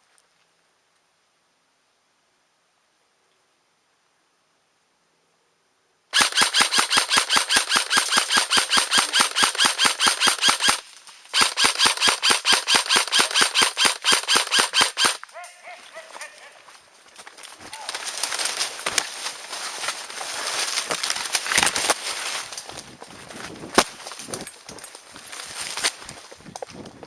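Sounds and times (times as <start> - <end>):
airsoft gun firing full auto: 6.1 - 15.2.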